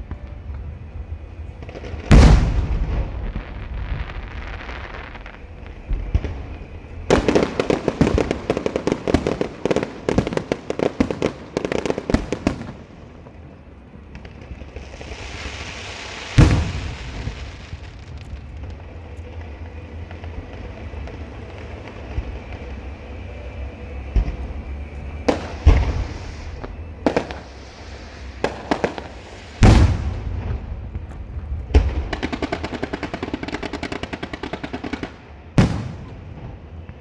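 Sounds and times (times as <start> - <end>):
firecrackers popping: 0.0 - 37.0
loud bang: 2.1 - 4.3
firework hiss: 14.6 - 23.2, 24.4 - 34.4.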